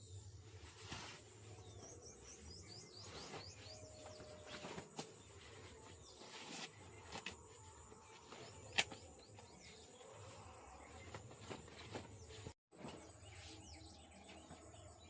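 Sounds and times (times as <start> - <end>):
birds chirping: 1.0 - 15.0.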